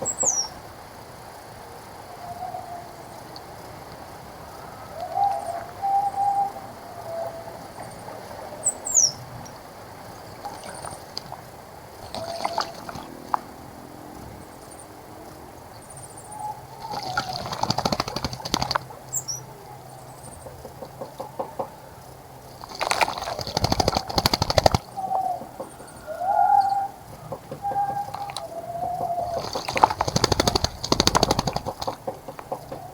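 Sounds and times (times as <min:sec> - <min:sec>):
doves cooing: 0:04.3 - 0:13.6, 0:16.4 - 0:32.9
bird splashing and fluttering: 0:09.9 - 0:13.6, 0:16.8 - 0:19.4, 0:22.5 - 0:25.0, 0:27.2 - 0:32.9.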